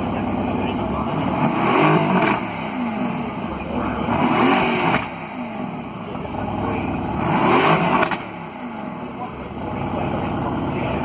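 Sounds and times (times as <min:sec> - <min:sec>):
car engine revving: 0:00.0 - 0:11.0
exhaust pop: 0:01.7 - 0:10.4.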